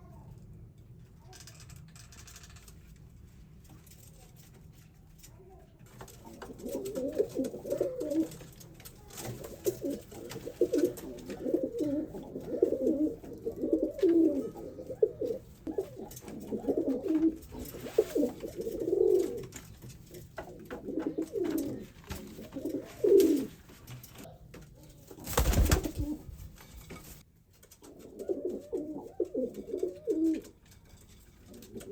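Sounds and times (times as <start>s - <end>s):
pigeon cooing: 6.4s - 8.4s, 9.2s - 19.5s, 20.6s - 23.6s, 27.9s - 30.5s.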